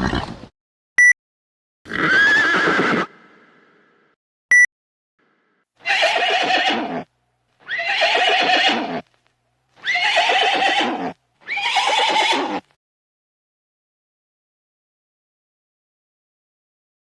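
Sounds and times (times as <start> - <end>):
horse neighing: 0.0 - 0.4, 1.9 - 3.9, 5.8 - 9.1, 9.8 - 12.7.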